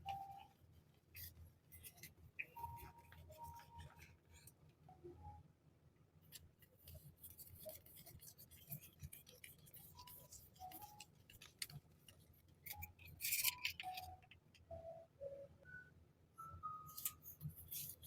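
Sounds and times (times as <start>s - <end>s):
wrapping crinkling: 6.8s - 14.3s.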